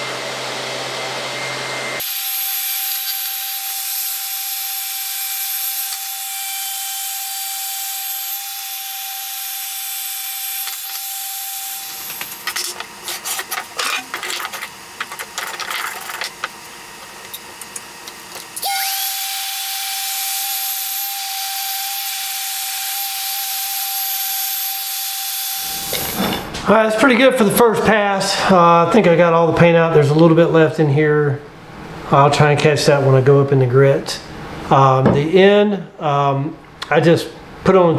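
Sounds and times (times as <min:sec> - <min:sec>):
electric sander whining: 0:00.0 - 0:12.5, 0:18.6 - 0:26.4
scraping and rubbing: 0:12.4 - 0:16.5.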